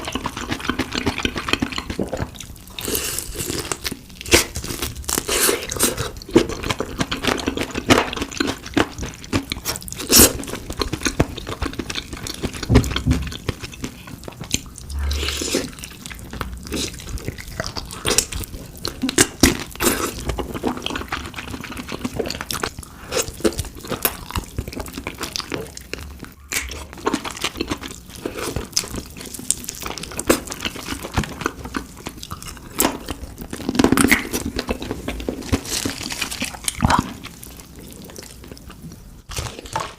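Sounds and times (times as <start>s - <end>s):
crunching fried chicken: 0.0s - 39.9s.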